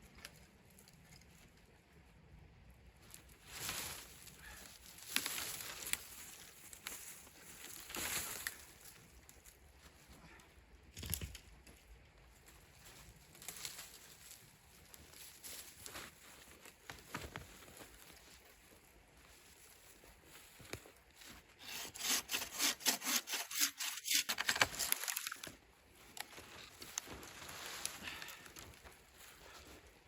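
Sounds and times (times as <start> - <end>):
hand saw cutting wood: 21.6 - 25.0.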